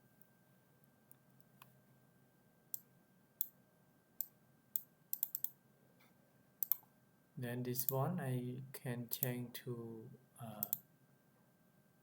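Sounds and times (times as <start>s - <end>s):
computer mouse clicks: 4.2s - 5.6s, 6.6s - 6.9s, 10.6s - 10.8s
faint ticks: 10.6s - 10.8s.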